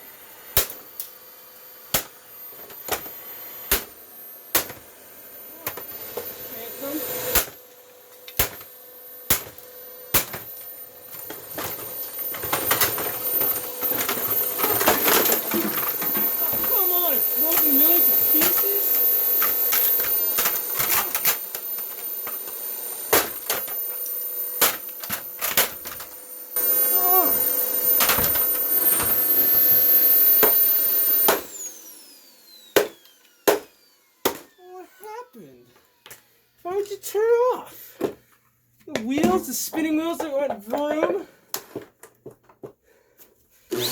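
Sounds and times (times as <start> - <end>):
vacuum motor whining: 0.0 - 38.2, 43.7 - 43.9
plastic vacuum body being smashed: 9.3 - 16.7, 23.1 - 23.8, 24.6 - 26.1
rattling clattering plastic pieces: 11.1 - 16.7, 19.4 - 22.5.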